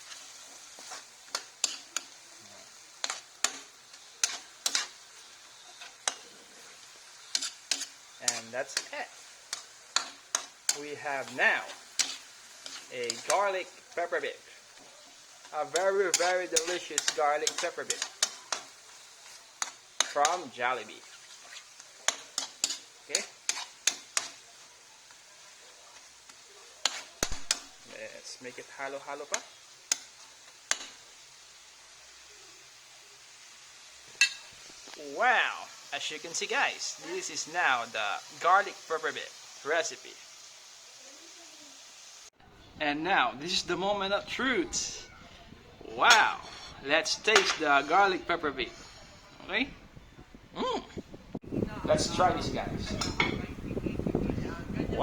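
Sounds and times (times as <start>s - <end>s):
utensil scraping a pan: 0.0s - 24.5s, 26.8s - 27.8s, 46.0s - 49.3s
meat sizzling in a pan: 0.0s - 55.0s.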